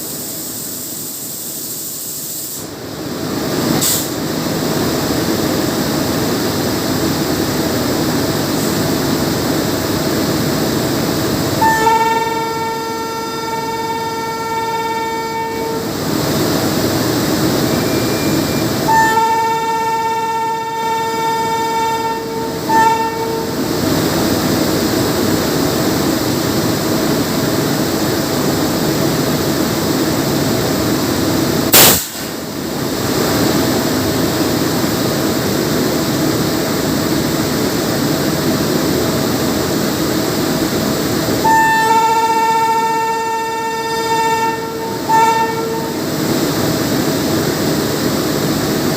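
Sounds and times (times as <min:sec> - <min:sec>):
train rumbling: 0:00.0 - 0:48.9
locomotive horn blasts: 0:11.6 - 0:15.9, 0:17.7 - 0:23.6, 0:41.4 - 0:46.1.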